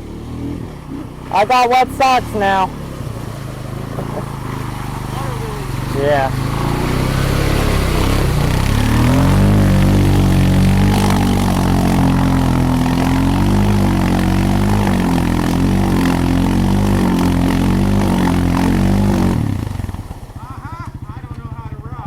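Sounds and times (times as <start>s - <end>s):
atv engine revving: 0.0s - 22.0s.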